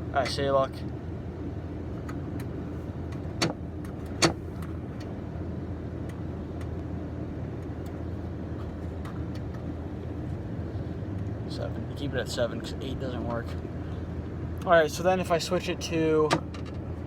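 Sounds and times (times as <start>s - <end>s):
air conditioner fan humming: 0.0s - 17.0s.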